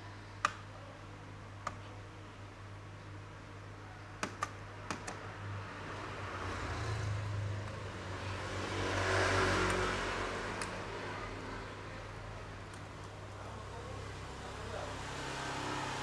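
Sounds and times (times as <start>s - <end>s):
motor vehicle passing: 5.6s - 11.8s.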